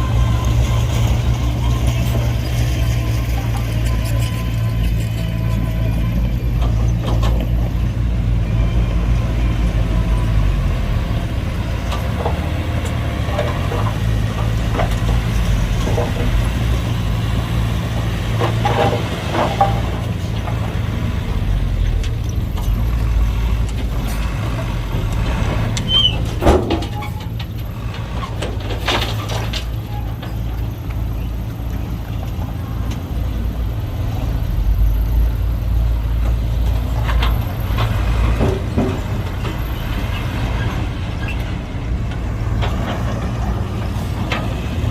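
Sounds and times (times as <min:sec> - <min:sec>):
diesel machinery running: 0:00.0 - 0:44.9
metallic clanks and knocks: 0:18.3 - 0:20.8, 0:23.6 - 0:30.6, 0:37.0 - 0:40.8
high squeal: 0:25.8 - 0:27.3.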